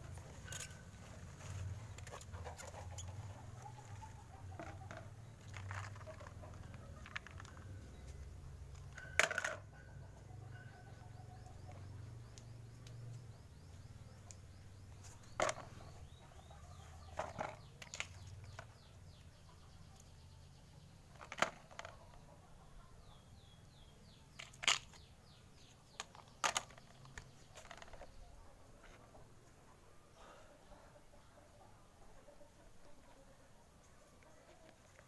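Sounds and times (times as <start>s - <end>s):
birds chirping: 10.2s - 28.4s.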